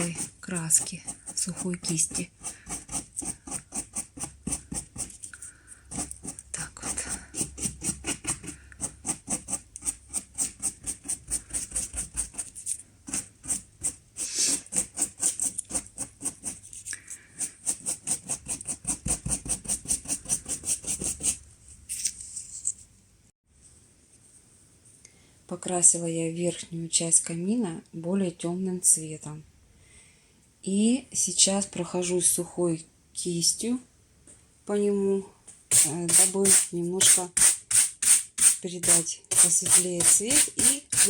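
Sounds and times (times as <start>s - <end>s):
scratchy paintbrush strokes: 0.0s - 21.4s, 35.7s - 41.0s.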